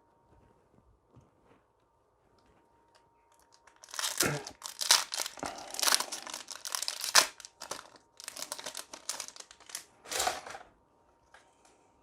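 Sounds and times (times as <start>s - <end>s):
foil wrapper crinkling and tearing: 3.3s - 9.9s.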